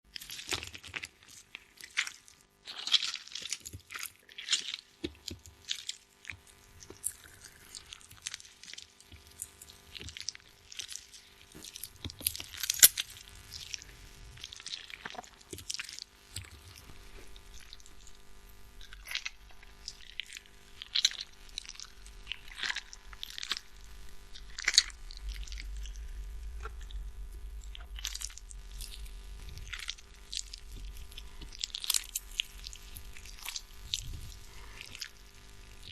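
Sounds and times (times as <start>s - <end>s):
tomato squishing by hand: 0.1s - 35.9s.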